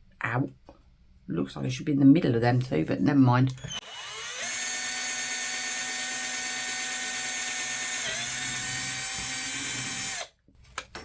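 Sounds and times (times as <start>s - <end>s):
electric drill whining: 3.6s - 10.4s.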